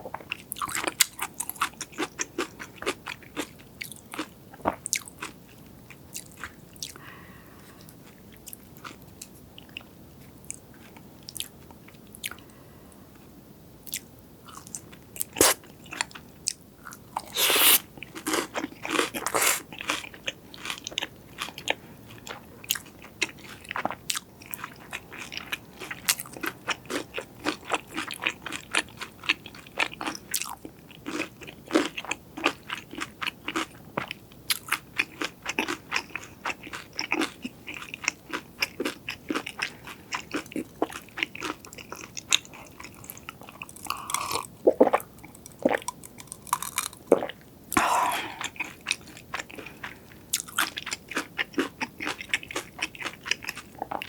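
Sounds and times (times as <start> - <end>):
crunchy bites and chewing: 16.8 - 54.0.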